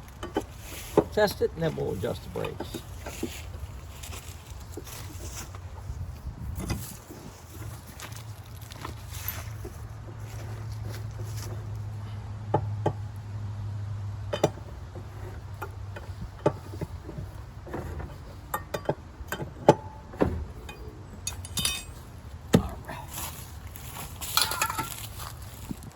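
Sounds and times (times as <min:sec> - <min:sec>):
low steady hum: 0:00.0 - 0:25.9
metal tools clinking: 0:20.6 - 0:25.7.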